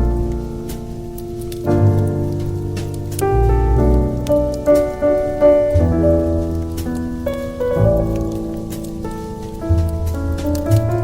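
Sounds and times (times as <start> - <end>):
fire crackling: 0.0 - 11.0
piano chords: 0.0 - 11.0
bass line: 1.7 - 4.8, 5.7 - 6.9.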